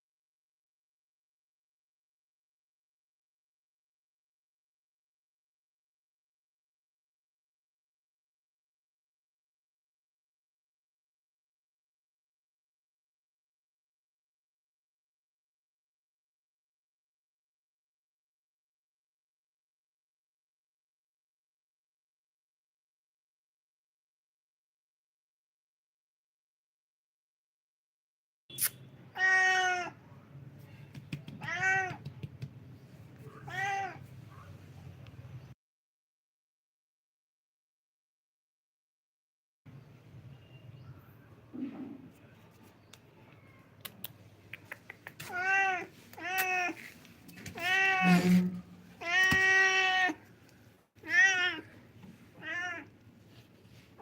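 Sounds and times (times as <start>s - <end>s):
cat meowing: 29.1s - 30.0s, 31.4s - 32.0s, 33.4s - 34.0s, 45.3s - 46.8s, 49.0s - 50.2s, 51.0s - 51.7s, 52.4s - 52.9s.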